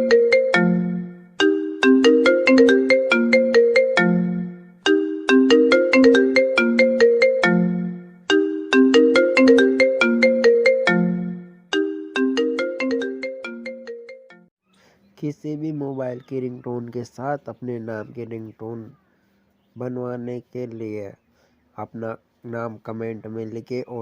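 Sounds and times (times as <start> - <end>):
mobile phone ringtone melody: 0.0 - 14.5.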